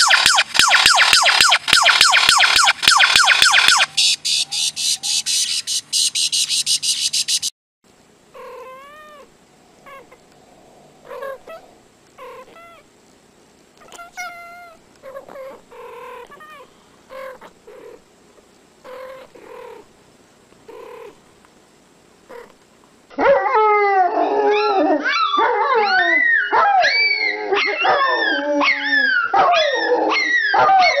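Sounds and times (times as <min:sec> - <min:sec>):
rapid loud clicks: 0:00.0 - 0:04.2
domestic animals crying out: 0:00.0 - 0:07.5, 0:08.3 - 0:12.9, 0:13.8 - 0:18.0, 0:18.8 - 0:19.9, 0:23.2 - 0:31.0.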